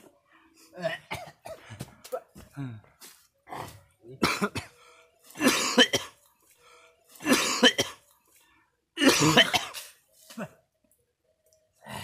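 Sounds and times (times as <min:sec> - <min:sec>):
man coughing and retching: 0:00.8 - 0:01.6, 0:04.1 - 0:04.8, 0:05.4 - 0:06.2, 0:07.2 - 0:08.0, 0:09.0 - 0:10.6.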